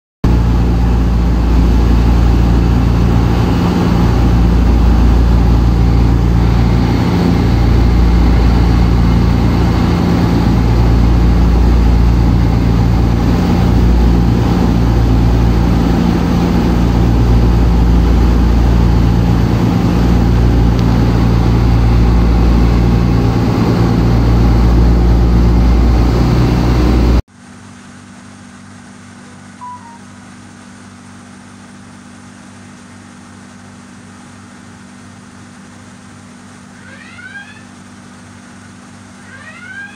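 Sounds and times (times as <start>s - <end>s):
engine running: 0.2s - 39.9s.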